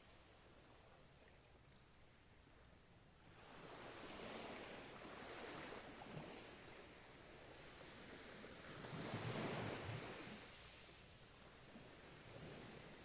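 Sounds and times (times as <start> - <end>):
ocean waves washing ashore: 3.3 - 13.0.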